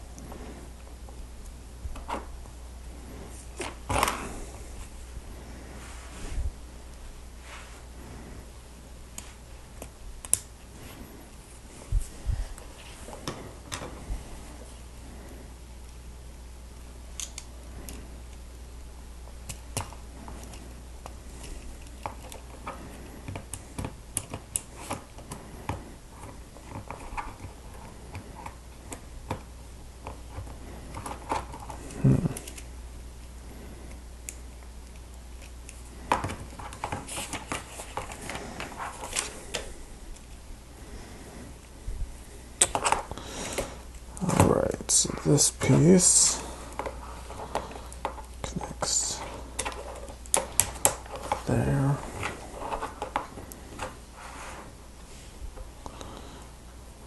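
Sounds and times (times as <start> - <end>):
faint low hum: 0.0 - 57.0.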